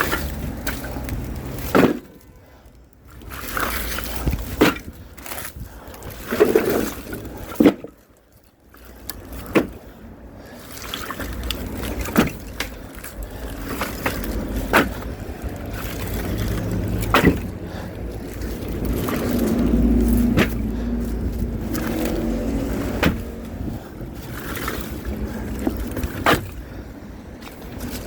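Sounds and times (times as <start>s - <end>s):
firewood logs knocking: 0.0s - 2.3s, 4.2s - 5.6s, 6.3s - 8.0s, 9.1s - 9.8s, 11.4s - 26.8s
low engine hum: 8.5s - 28.0s.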